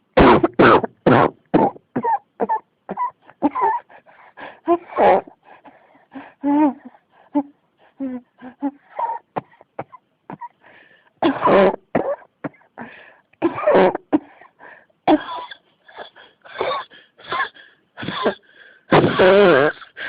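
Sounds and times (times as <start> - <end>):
person coughing harshly: 0.2 - 3.8, 11.2 - 12.7, 13.4 - 14.3, 15.1 - 20.0
quick breaths: 3.2 - 8.0, 10.6 - 11.2.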